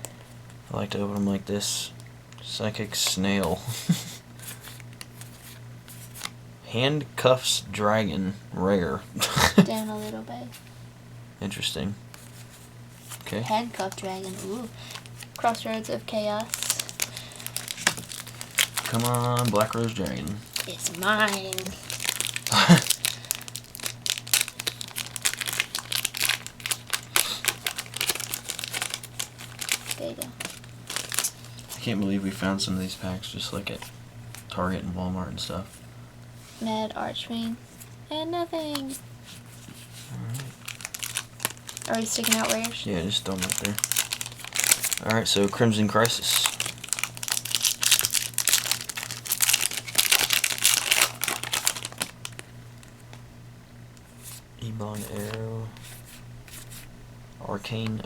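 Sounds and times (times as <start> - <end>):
foil wrapper crinkling: 2.3 - 6.4, 12.1 - 34.6, 38.6 - 53.2.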